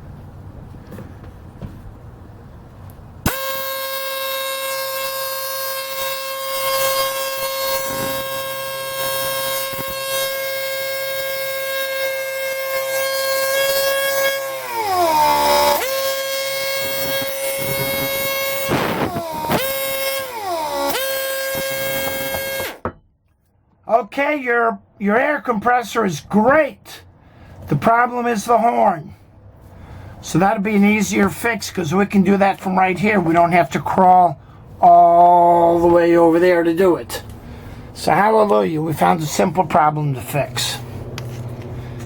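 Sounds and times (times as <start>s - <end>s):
air horn steady tone: 3.2s - 22.8s
air compressor running: 3.3s - 23.0s.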